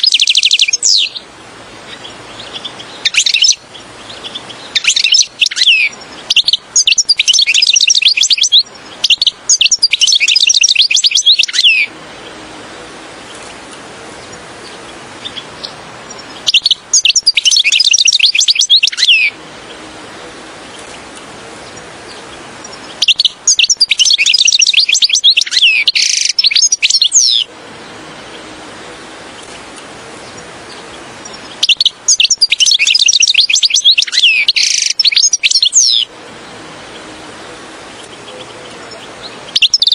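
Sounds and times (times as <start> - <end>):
goldfinch twittering song: 0.0 - 12.4, 13.2 - 19.8, 20.7 - 39.9
background hiss: 0.0 - 39.9.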